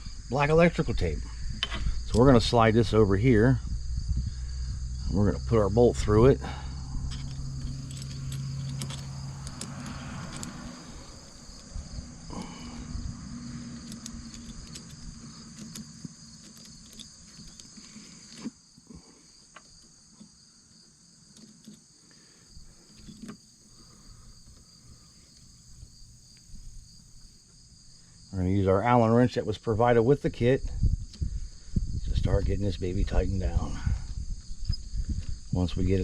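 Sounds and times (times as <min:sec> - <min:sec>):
crickets chirring: 0:00.0 - 0:36.0
metal clamp clicks and knocks: 0:01.6 - 0:02.4, 0:07.1 - 0:11.8, 0:13.5 - 0:18.6, 0:21.3 - 0:21.9, 0:22.9 - 0:23.4.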